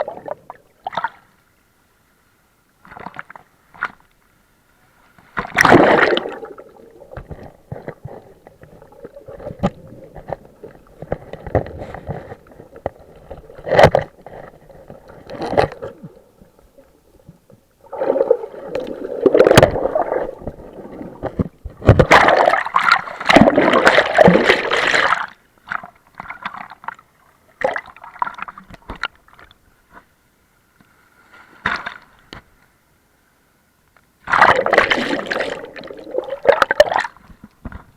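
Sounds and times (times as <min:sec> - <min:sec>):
water gurgling underwater: 0:00.0 - 0:01.0, 0:05.6 - 0:25.2, 0:34.3 - 0:37.1.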